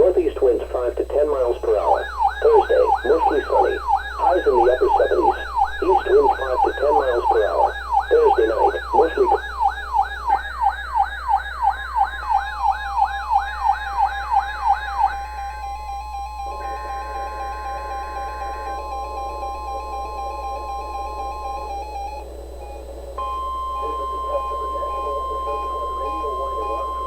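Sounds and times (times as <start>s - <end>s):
broadcast voice: 0.0s - 9.5s, 23.8s - 27.0s
steady electronic tones: 0.0s - 27.0s
electronic siren sweep: 1.7s - 27.0s.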